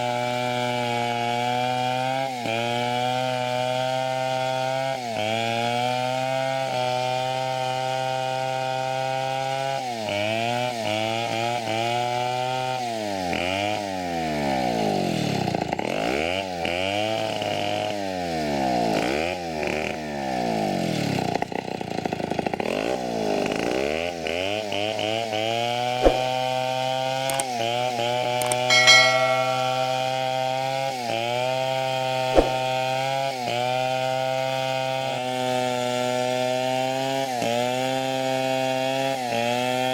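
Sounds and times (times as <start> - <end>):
sharp clicks: 27.3 - 27.5, 28.4 - 30.1.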